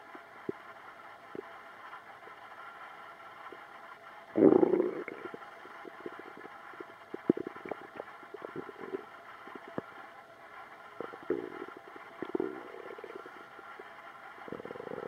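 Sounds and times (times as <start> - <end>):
stomach gurgling: 4.3 - 15.0.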